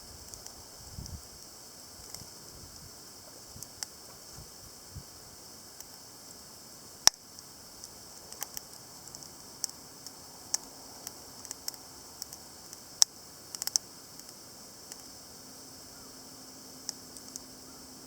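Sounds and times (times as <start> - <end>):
wood fire crackling: 7.0 - 15.0
fire sharp snaps: 7.0 - 15.1.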